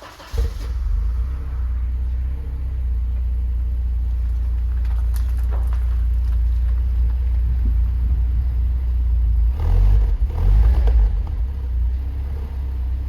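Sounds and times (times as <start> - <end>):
car engine idling: 0.0 - 13.0
engine revving: 9.4 - 13.0.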